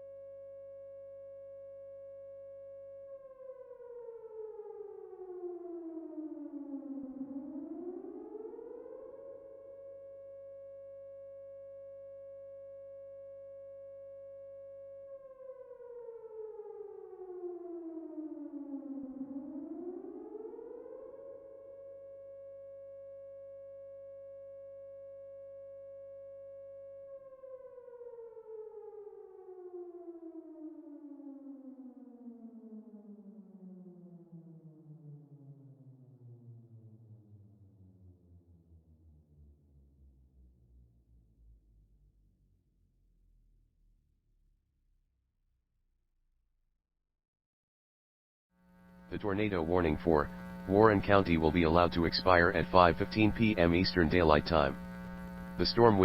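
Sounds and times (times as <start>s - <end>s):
warning siren: 0.0s - 35.4s, 48.9s - 56.0s.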